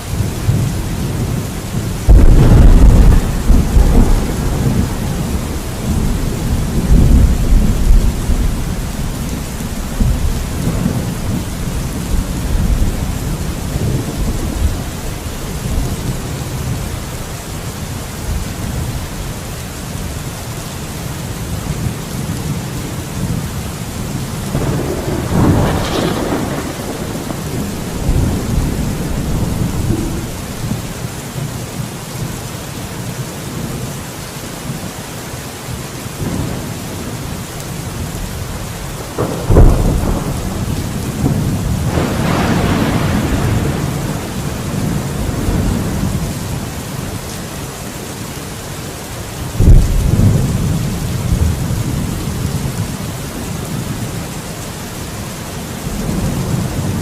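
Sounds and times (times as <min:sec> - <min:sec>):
heavy rain: 0:00.0 - 0:57.0
rolling thunder: 0:00.1 - 0:17.3, 0:21.8 - 0:31.1, 0:38.0 - 0:47.2, 0:49.5 - 0:54.1
sharp thunder crack: 0:02.0 - 0:08.6, 0:24.6 - 0:30.8, 0:39.2 - 0:46.1, 0:49.6 - 0:50.8.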